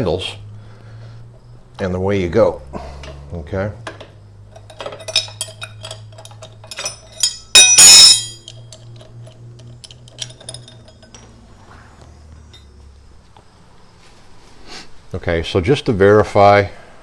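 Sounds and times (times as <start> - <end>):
metal hand tools clinking: 4.4 - 11.4.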